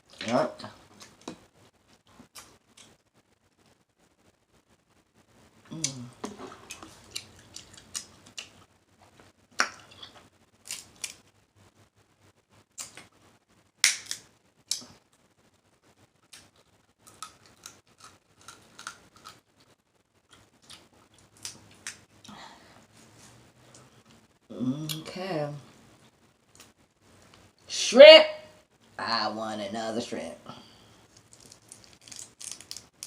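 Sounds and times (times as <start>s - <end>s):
crab shells cracking while eating: 6.6s - 8.6s, 9.6s - 11.2s, 13.8s - 14.9s, 16.2s - 22.1s, 31.1s - 33.0s.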